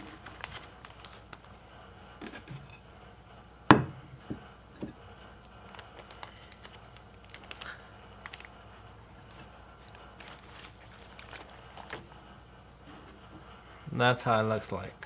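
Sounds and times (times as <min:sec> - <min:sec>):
plastic bag clicks and rustles: 0:00.0 - 0:01.5, 0:05.7 - 0:08.5, 0:09.9 - 0:12.0.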